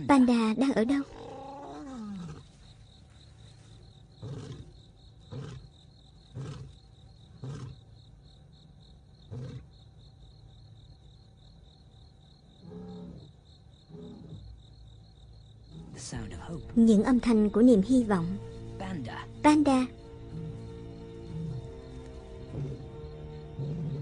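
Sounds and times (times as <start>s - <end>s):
crickets chirping: 0.0s - 24.0s
lion roaring and grunting: 1.0s - 2.5s, 4.2s - 5.7s, 6.3s - 7.8s, 9.3s - 9.7s, 12.6s - 13.3s, 13.9s - 14.5s, 20.3s - 22.9s, 23.6s - 24.0s.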